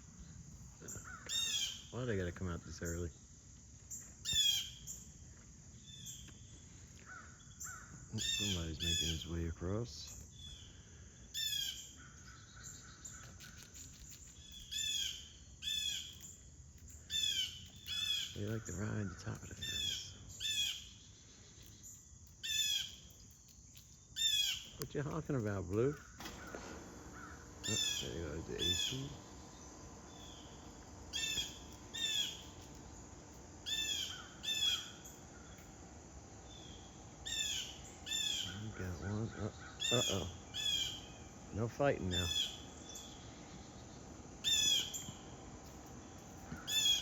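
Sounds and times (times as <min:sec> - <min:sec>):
blue jay harsh calls: 0:00.8 - 0:02.0, 0:04.2 - 0:05.1, 0:07.0 - 0:09.4, 0:10.4 - 0:13.8, 0:14.4 - 0:16.4, 0:17.0 - 0:21.1, 0:22.4 - 0:23.1, 0:24.2 - 0:24.8, 0:25.8 - 0:47.0.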